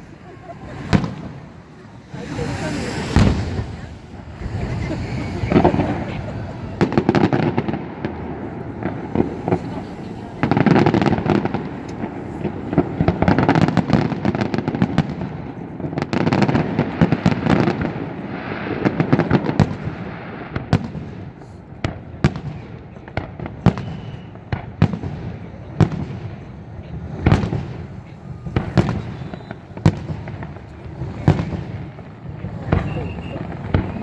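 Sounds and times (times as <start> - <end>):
fireworks crackling and booming: 0.0 - 34.0.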